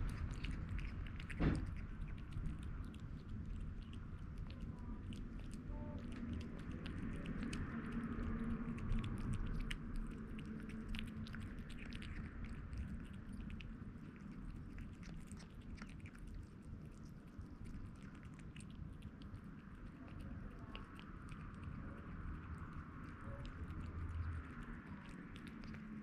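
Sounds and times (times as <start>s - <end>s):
kitten chewing wet food: 0.0s - 26.0s.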